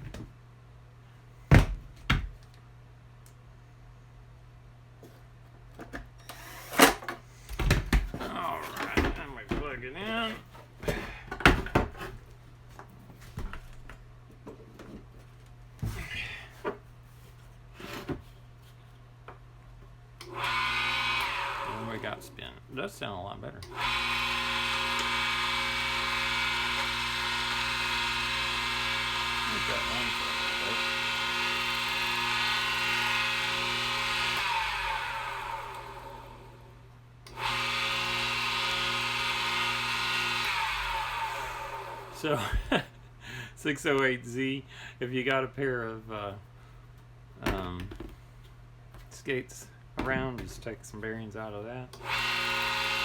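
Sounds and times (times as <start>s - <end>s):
tile saw motor whining: 20.2s - 22.3s, 23.6s - 42.7s, 52.0s - 53.0s.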